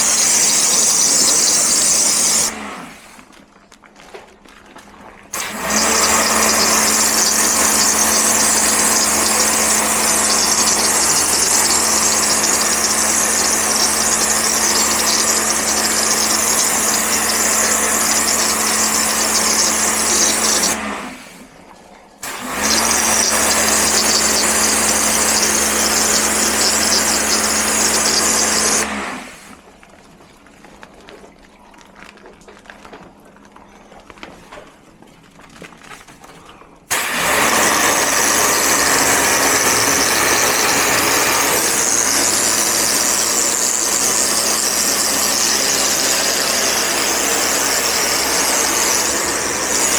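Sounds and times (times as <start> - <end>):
pressure washer spray hissing: 0.0 - 2.5, 5.4 - 20.8, 22.2 - 28.9, 36.9 - 49.9
pressure washer motor hum: 0.0 - 3.2, 5.3 - 21.4, 22.2 - 29.6, 36.9 - 49.9.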